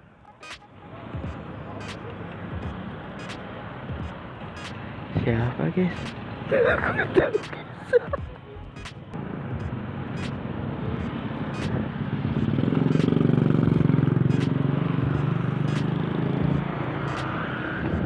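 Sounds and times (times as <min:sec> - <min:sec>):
vehicle engine running: 0:08.1 - 0:18.0.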